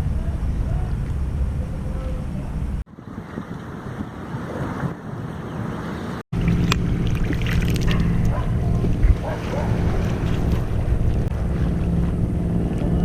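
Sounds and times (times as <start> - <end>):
engine drone: 0.0 - 2.9, 6.4 - 13.0
wind noise on microphone: 0.0 - 13.0.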